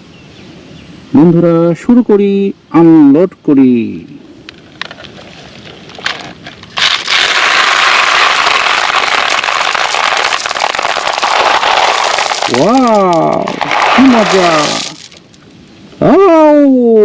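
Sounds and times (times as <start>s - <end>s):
marbles pouring clatter: 6.8s - 15.4s.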